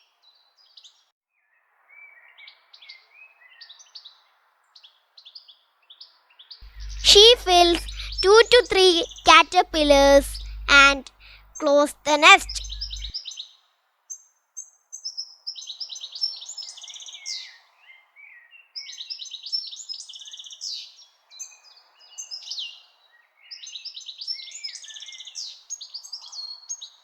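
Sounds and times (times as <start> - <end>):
songbirds chirping and trilling: 6.7 - 10.7, 12.4 - 13.1.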